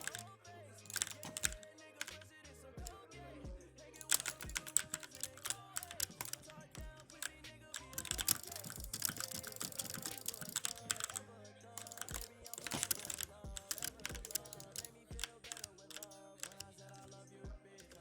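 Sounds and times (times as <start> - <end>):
mechanical keyboard typing: 0.0 - 0.2, 0.9 - 2.2, 4.0 - 11.2, 11.8 - 17.2, 17.8 - 18.0
background music: 0.0 - 18.0.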